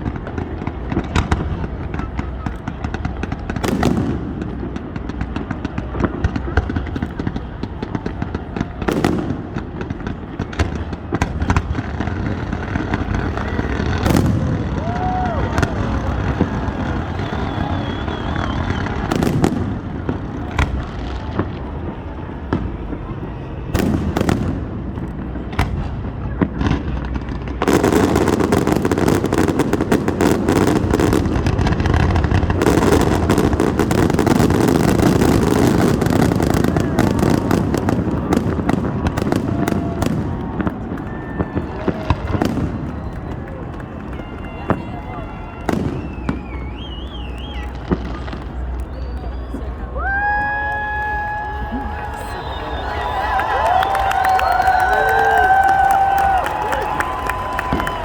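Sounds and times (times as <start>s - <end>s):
fireworks bangs and crackling: 0.0s - 58.0s.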